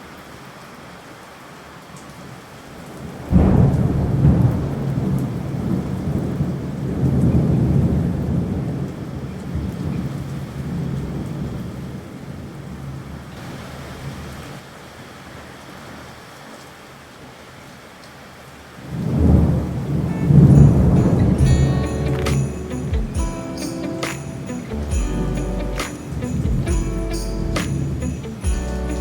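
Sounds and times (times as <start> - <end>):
thunder clap and rumble: 3.2 - 8.8, 19.0 - 23.2
steady hiss: 19.9 - 29.0.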